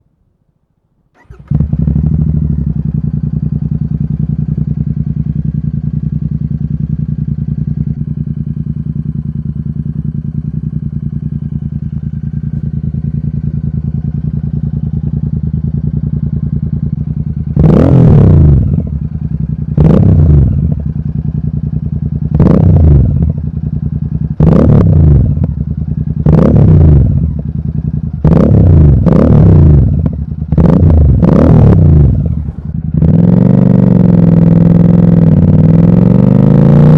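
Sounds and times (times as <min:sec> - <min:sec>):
motorcycle engine idling and revving: 0:01.1 - 0:36.9.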